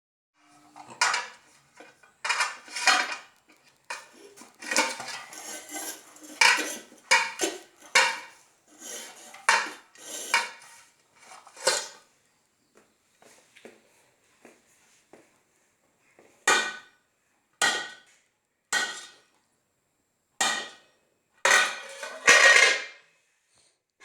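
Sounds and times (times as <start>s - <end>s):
hard objects clattering together: 0.8s - 12.0s, 21.5s - 23.0s.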